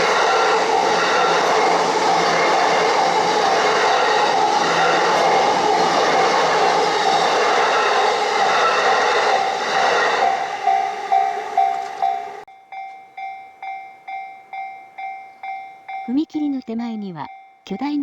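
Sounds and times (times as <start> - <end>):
train rumbling over crossing: 0.0 - 16.4
crossing warning bell ringing: 0.0 - 18.0.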